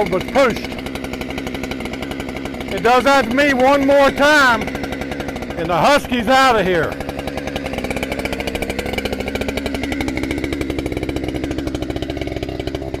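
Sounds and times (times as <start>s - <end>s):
chainsaw running: 0.0s - 13.0s.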